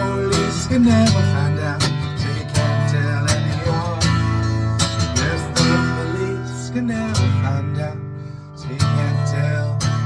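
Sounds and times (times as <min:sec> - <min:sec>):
acoustic guitar strumming chords: 0:00.0 - 0:10.0.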